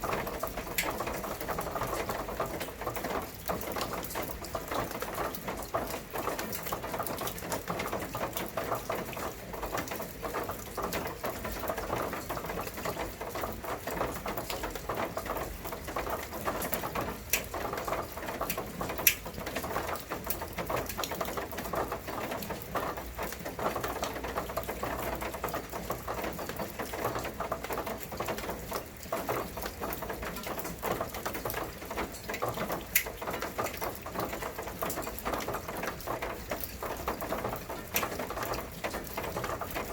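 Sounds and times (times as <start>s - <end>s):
rain pattering: 0.0s - 39.9s.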